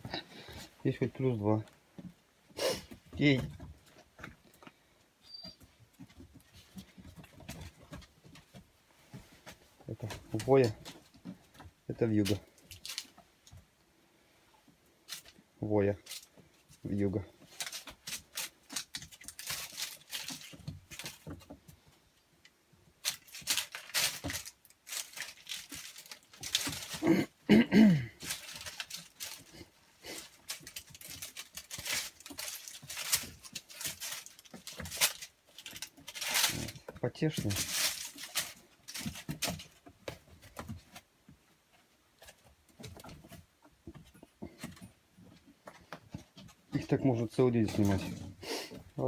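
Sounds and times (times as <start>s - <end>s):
puppies rustling and scratching: 0.0s - 27.5s, 28.1s - 49.0s.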